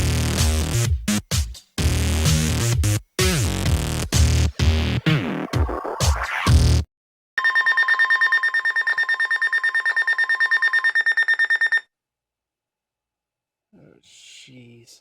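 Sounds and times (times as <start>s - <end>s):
electronic music: 0.0s - 6.9s
weather alarm rapid high beeps: 7.4s - 11.8s.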